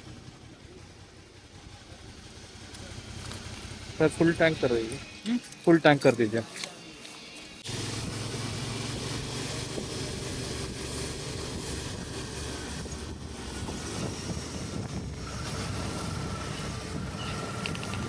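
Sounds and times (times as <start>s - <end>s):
motorcycle engine running: 0.0s - 5.2s, 7.6s - 18.0s
wind buffeting microphone: 9.6s - 18.0s.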